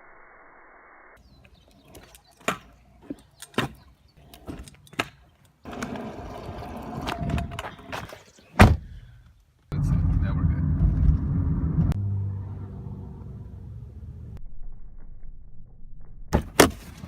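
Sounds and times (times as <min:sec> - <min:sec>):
rumbling noise: 0:09.7 - 0:16.4.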